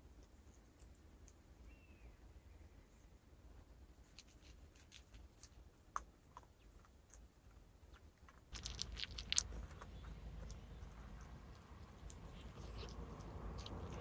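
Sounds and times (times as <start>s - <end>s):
small clicks and crackles: 4.0s - 14.0s.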